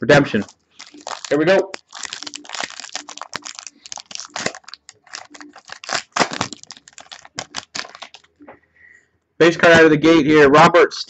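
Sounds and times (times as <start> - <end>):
plastic wrapper tearing and crinkling: 0.3 - 8.4.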